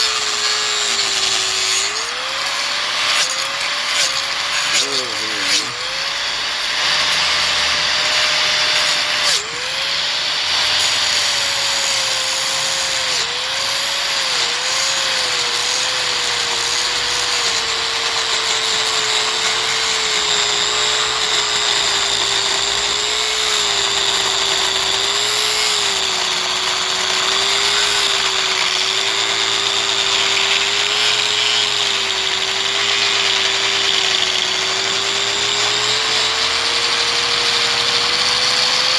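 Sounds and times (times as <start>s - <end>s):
power tool cutting plastic: 0.0s - 38.9s.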